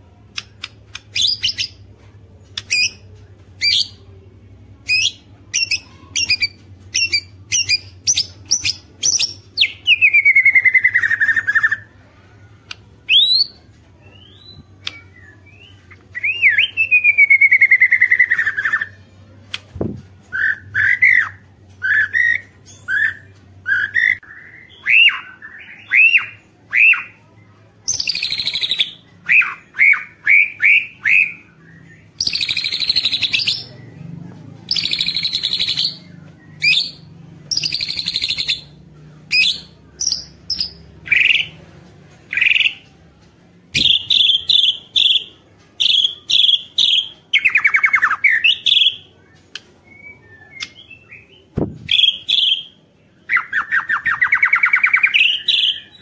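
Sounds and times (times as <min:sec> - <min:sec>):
songbird singing: 0:13.0 - 0:19.1, 0:27.9 - 0:34.0, 0:34.7 - 0:41.6, 0:43.7 - 0:56.0.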